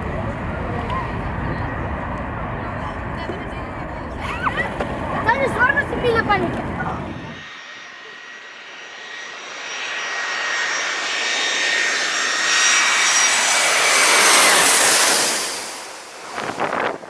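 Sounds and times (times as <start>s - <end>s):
jet airliner passing overhead: 0.0s - 17.0s.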